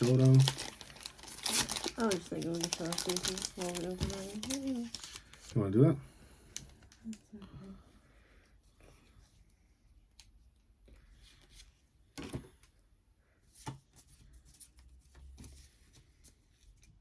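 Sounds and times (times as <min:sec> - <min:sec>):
card pack rustling and clicking: 0:00.0 - 0:05.4.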